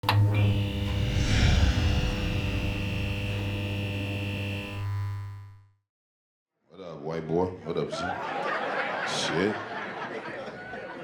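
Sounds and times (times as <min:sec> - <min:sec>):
electronic drone: 0:00.3 - 0:05.6
electronic whoosh: 0:00.6 - 0:04.3.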